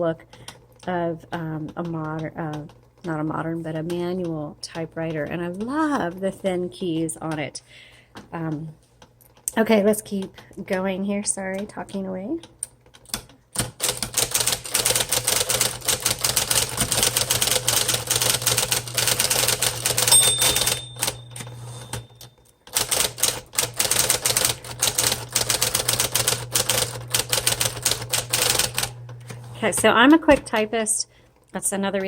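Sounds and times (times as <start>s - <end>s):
electric typewriter keystrokes: 11.9s - 30.8s
typewriter motor hum: 12.9s - 30.7s
typewriter bell ringing: 19.0s - 23.2s.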